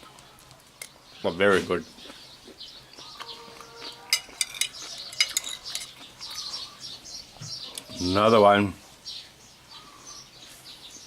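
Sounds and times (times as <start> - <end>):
birds chirping: 0.0 - 11.0
cutlery clinking on a plate: 4.1 - 6.0.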